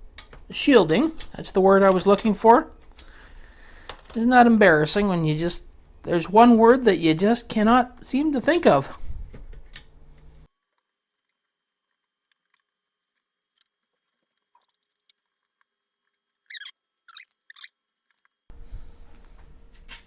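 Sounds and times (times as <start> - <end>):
faint clicks and taps: 0.0 - 4.2.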